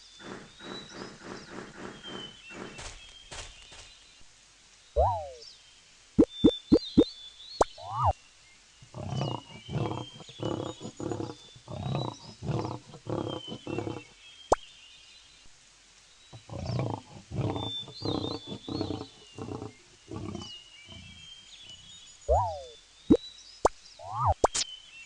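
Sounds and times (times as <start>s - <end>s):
birds chirping: 0.0s - 4.3s, 5.0s - 15.3s, 16.2s - 24.9s
big cat rasping grunts: 8.9s - 14.1s, 16.4s - 21.8s.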